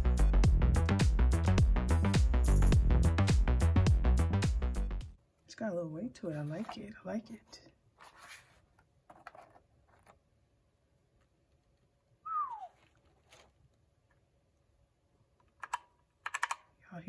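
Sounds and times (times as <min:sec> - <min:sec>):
rustling of packaging: 0:07.9 - 0:10.3, 0:12.6 - 0:14.2.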